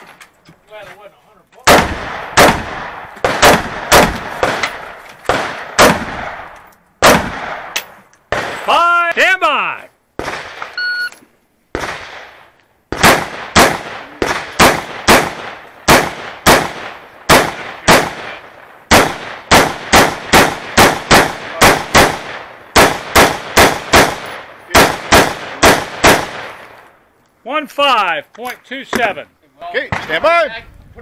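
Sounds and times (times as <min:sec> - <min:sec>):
rifle shots: 0:01.6 - 0:08.7, 0:10.2 - 0:10.8, 0:11.7 - 0:26.9
shot timer beep: 0:10.8 - 0:11.2.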